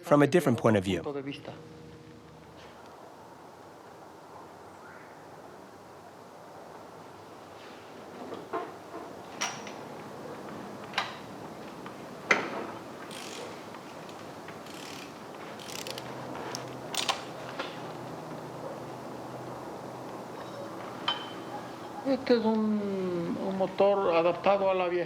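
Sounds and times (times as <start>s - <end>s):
faint low hum: 0.2s - 25.0s
tools scraping: 12.3s - 17.9s.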